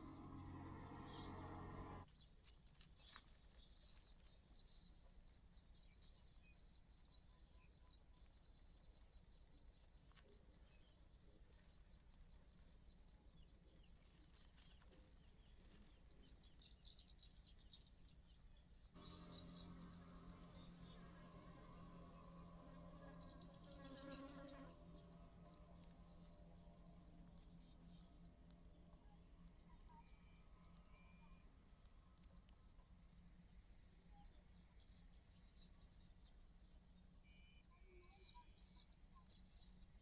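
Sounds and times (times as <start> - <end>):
small bird chirping: 2.0 - 19.6.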